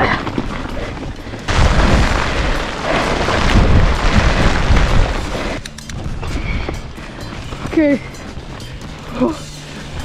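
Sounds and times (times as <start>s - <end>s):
wind buffeting microphone: 0.0s - 7.7s
tyres rumbling over rough trail: 0.0s - 10.0s.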